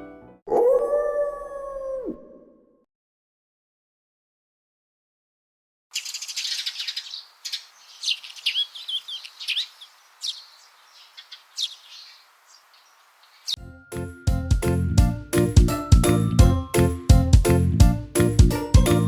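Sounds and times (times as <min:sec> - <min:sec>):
small birds chirping: 0:05.9 - 0:13.6.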